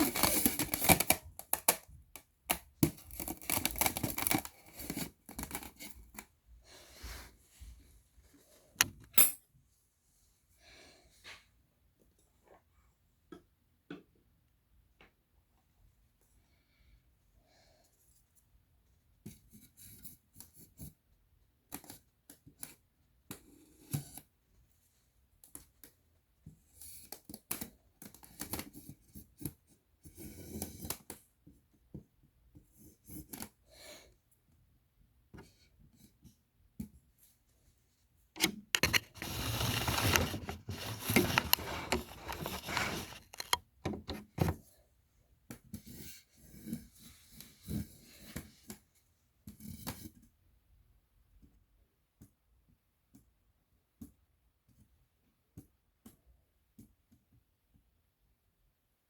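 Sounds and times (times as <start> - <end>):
plastic rubbing and crinkling: 38.4 - 44.5
light taps clicks and scratches: 38.4 - 44.7.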